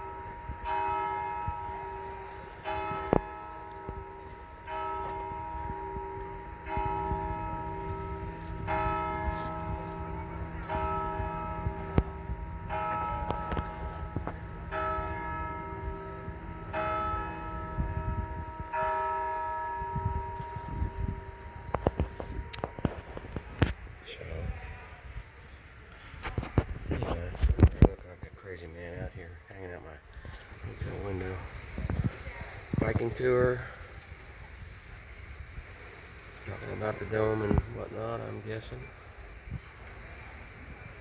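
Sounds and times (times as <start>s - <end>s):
clock bell striking: 0.0s - 22.0s.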